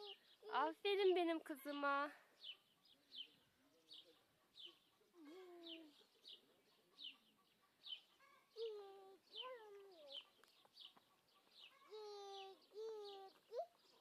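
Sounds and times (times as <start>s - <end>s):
chickens clucking: 2.5s - 8.7s, 9.3s - 14.0s.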